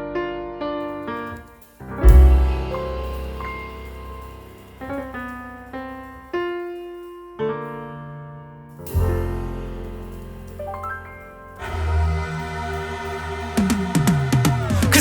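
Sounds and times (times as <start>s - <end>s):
piano music: 0.0s - 15.0s
deep bass hit: 2.0s - 4.1s.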